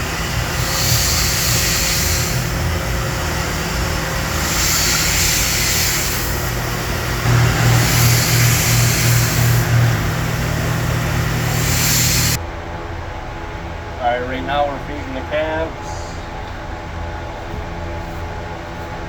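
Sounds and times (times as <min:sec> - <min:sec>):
hissing surges of water and air: 0:00.0 - 0:12.4
machine hum: 0:00.0 - 0:12.4
rhythmic low pulsing: 0:06.0 - 0:12.4.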